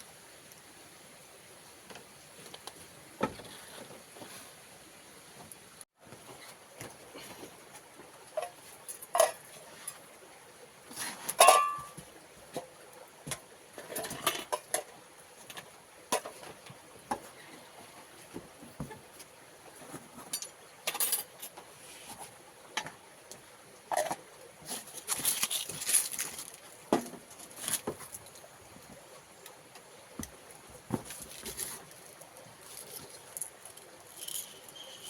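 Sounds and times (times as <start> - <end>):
dishes and utensils clinking: 8.4 - 9.5, 11.4 - 12.0.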